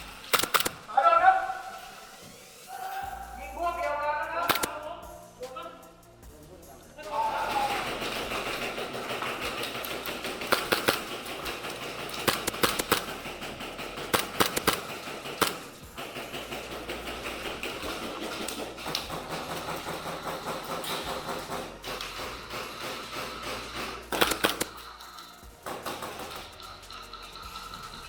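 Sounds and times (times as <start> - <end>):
airsoft guns firing: 0.0 - 2.0, 4.3 - 5.0, 7.2 - 26.8.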